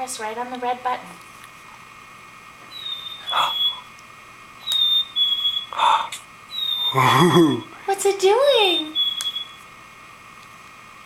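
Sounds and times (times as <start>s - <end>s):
toy bird chirping: 2.7s - 3.9s, 4.6s - 5.8s, 6.5s - 7.7s, 8.5s - 9.6s.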